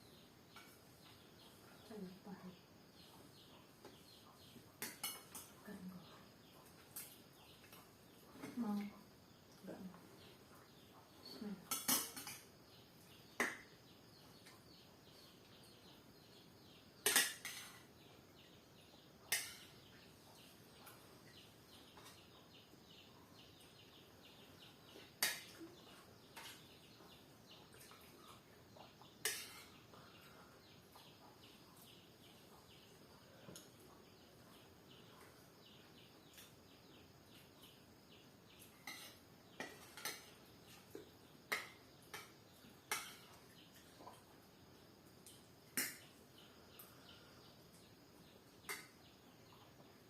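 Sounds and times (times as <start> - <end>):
faint bird chirping: 0.0 - 50.0
cutlery and plates clinking: 4.8 - 5.5, 11.7 - 12.5, 17.0 - 17.9, 29.2 - 29.8, 38.8 - 40.4, 41.5 - 43.3.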